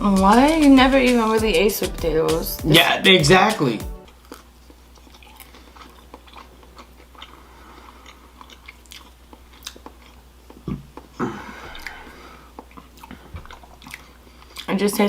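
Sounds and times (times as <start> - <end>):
chewing and biting food: 4.1 - 14.8.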